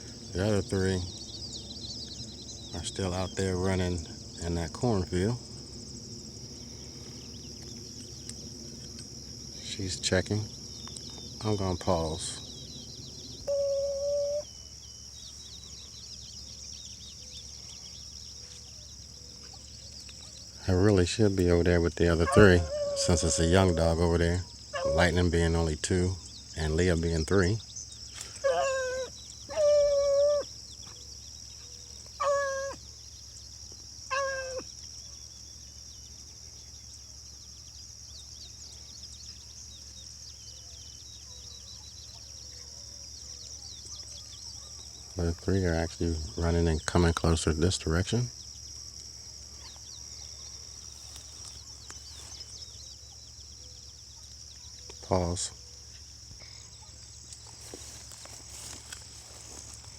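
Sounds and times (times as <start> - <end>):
insects chirring: 0.0 - 59.9
hounds baying: 22.1 - 24.0, 24.7 - 25.3, 28.3 - 30.6, 31.9 - 32.9, 34.1 - 34.7.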